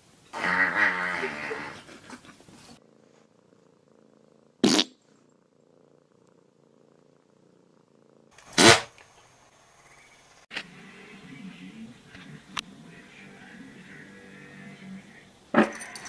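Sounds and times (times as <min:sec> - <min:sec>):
cat hissing: 0:00.3 - 0:02.8, 0:04.6 - 0:05.2, 0:08.1 - 0:09.0
cat purring softly: 0:01.1 - 0:08.4.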